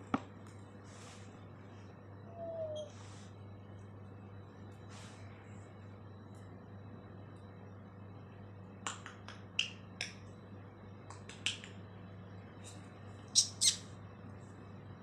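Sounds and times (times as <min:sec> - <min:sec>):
parrot calling: 0:02.3 - 0:02.9.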